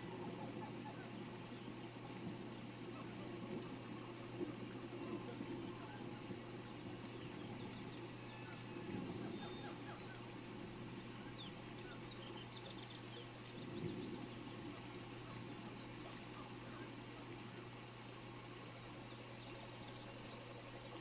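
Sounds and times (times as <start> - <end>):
steady rain hiss: 0.0 - 21.0
small birds chirping: 6.8 - 17.8.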